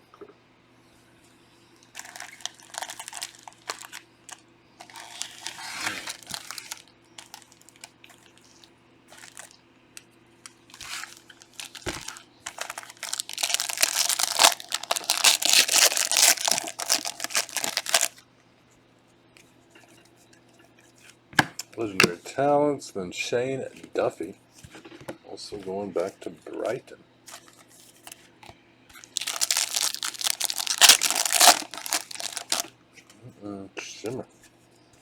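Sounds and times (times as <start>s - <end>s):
card pack wrappers crinkling: 2.0s - 9.6s, 10.4s - 18.2s, 29.0s - 32.7s.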